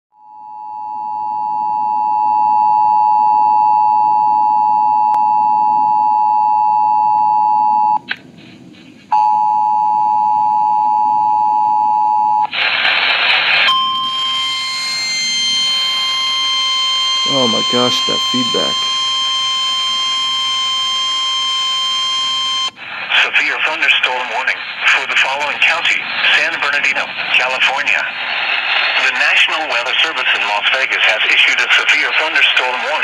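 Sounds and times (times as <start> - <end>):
harsh noise: 17.2 - 19.0.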